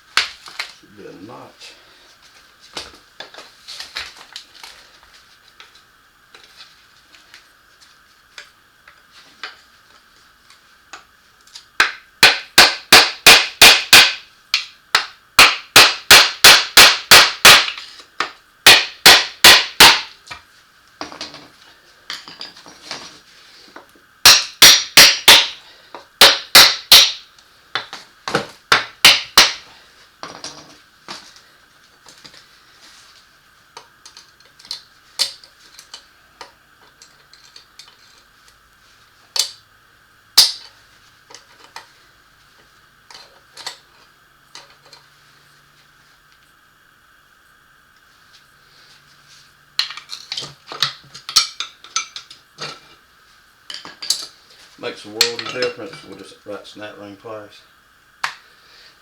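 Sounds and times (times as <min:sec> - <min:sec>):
hammer striking metal: 0:11.8 - 0:17.8, 0:18.7 - 0:20.1, 0:24.3 - 0:25.6, 0:26.2 - 0:27.2.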